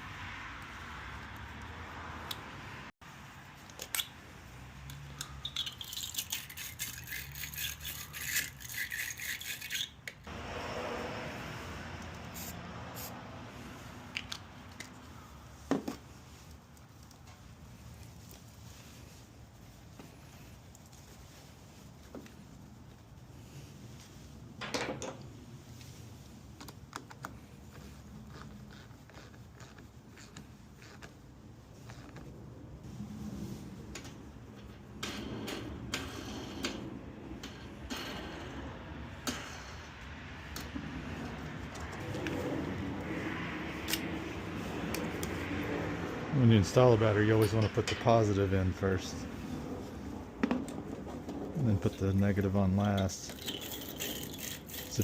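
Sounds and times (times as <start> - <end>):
metal tools rattling: 5.3 - 10.0, 52.0 - 55.0
scraping clatter: 47.2 - 55.0.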